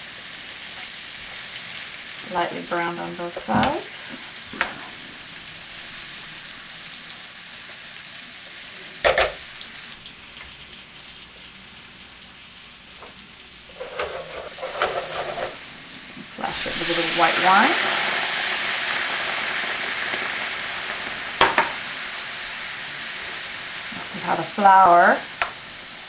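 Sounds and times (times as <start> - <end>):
chicken sizzling in a frying pan: 0.0 - 26.0
knocks and scrapes in pan: 13.7 - 15.6.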